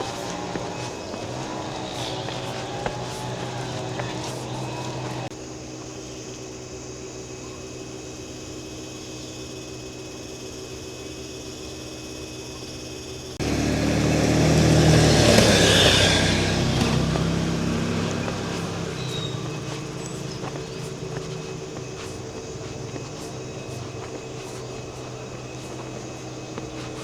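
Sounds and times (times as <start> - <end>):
vehicle engine passing by: 0.0 - 5.3, 13.4 - 27.0.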